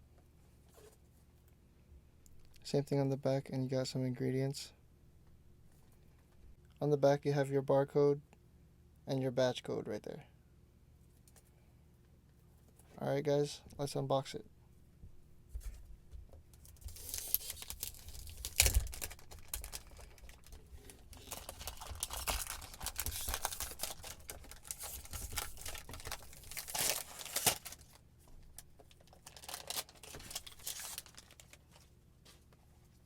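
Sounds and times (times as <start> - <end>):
packaging crinkling and tearing: 16.6 - 31.9.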